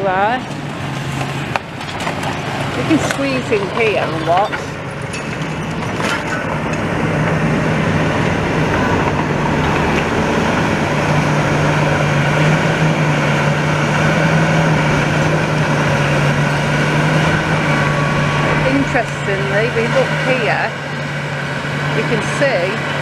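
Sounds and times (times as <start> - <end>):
diesel engine running: 0.0 - 23.0.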